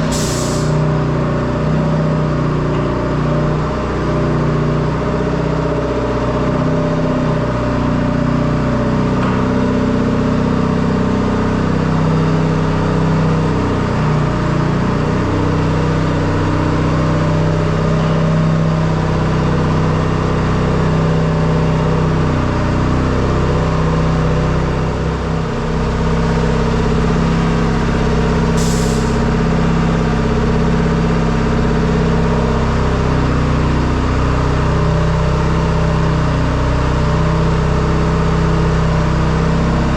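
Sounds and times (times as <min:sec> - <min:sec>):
sharp hiss of air: 0:00.0 - 0:00.8, 0:28.5 - 0:29.3
diesel engine fast idle: 0:00.0 - 0:04.9, 0:07.9 - 0:39.9.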